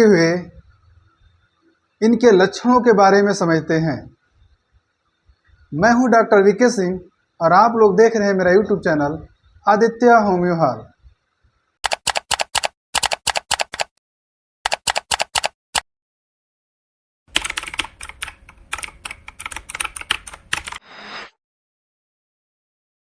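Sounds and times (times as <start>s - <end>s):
typing clicks: 11.8s - 14.0s, 14.6s - 15.9s, 17.3s - 20.8s
short hiss: 20.8s - 21.4s.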